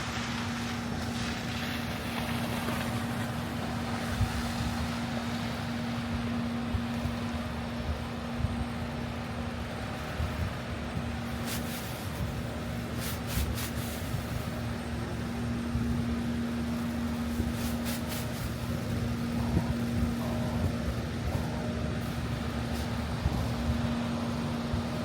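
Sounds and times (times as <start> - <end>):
constant low hum: 0.0 - 25.0
low rumble of vehicles: 0.0 - 25.0.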